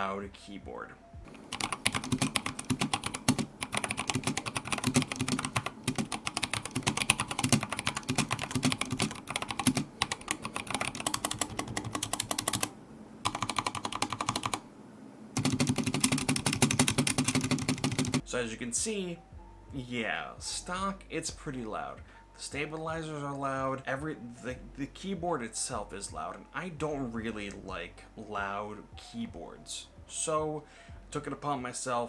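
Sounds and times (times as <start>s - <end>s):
fast typing on mechanical keyboard: 1.3s - 14.6s, 15.4s - 18.2s.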